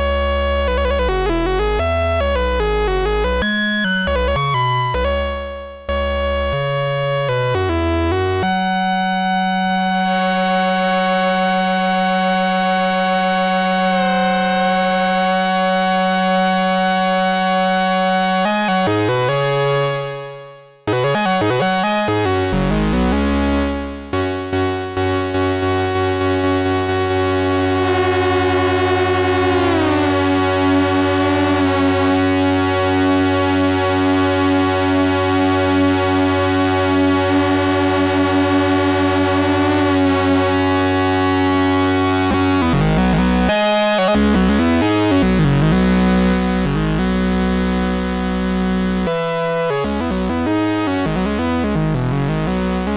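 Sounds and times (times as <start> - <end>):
buzzy synthesizer drone: 0.0 - 19.6, 20.9 - 52.9.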